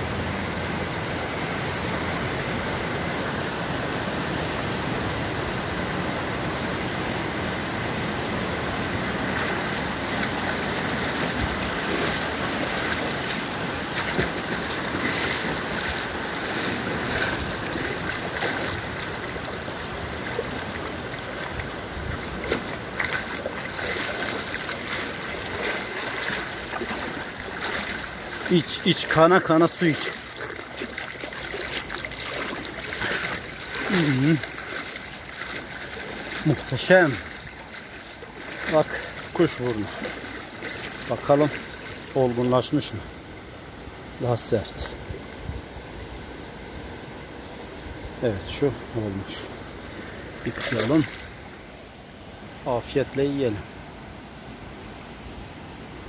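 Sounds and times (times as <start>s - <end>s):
stream water rushing: 0.0s - 56.0s
splashes and knocks: 9.2s - 42.2s, 50.4s - 51.4s.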